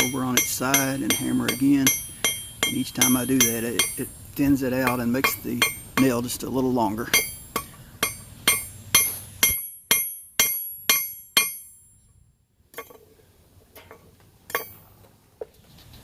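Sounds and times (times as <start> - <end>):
hammer striking metal on anvil: 0.0 - 4.1, 4.8 - 6.3, 7.0 - 11.9.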